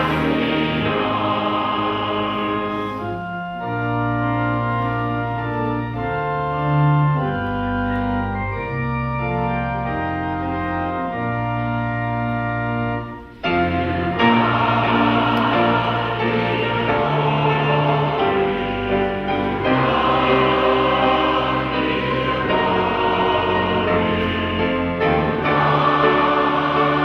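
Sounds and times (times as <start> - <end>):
full music: 0.0 - 27.0
organ playing held chords: 0.0 - 27.0.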